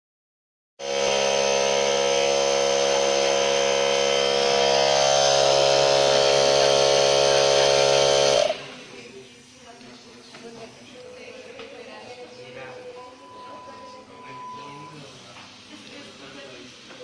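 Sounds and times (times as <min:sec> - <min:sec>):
electric fan running: 0:00.8 - 0:09.1.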